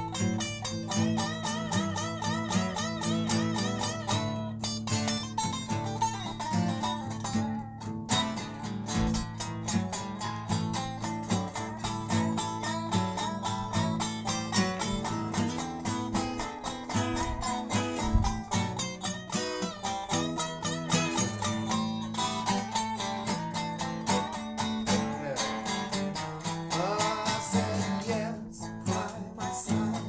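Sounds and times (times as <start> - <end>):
blues band playing: 8.1 - 28.2.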